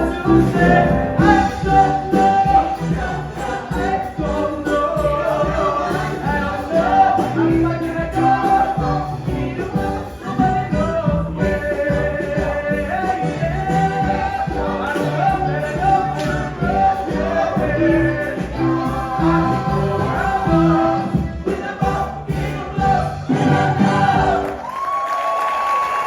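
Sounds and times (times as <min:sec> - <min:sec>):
cast singing in chorus: 0:00.0 - 0:24.7
pop-rock band playing: 0:00.0 - 0:24.7
audience applause: 0:23.4 - 0:26.0.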